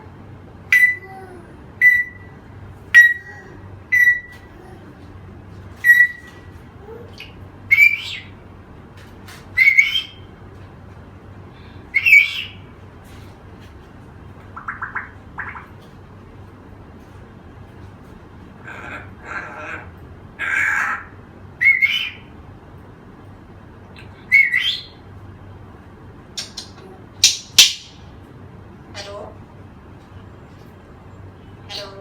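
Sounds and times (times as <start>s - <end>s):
parrot whistled squawks: 1.8s - 2.3s, 3.9s - 4.4s, 5.8s - 6.3s, 9.6s - 10.2s.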